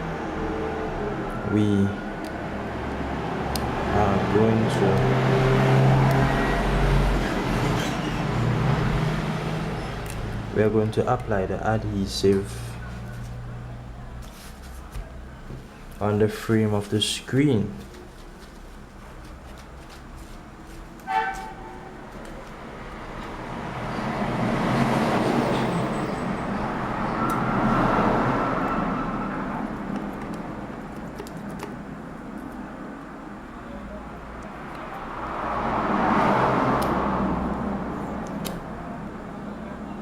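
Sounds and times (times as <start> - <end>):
road traffic passing: 0.0 - 40.0
short horn toot: 21.0 - 21.9.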